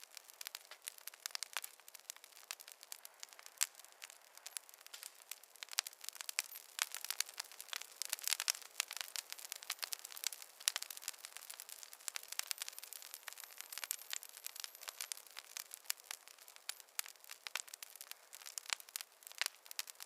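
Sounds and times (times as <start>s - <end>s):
sharp popping of fire: 0.0s - 20.0s
wood fire crackling: 0.0s - 20.0s.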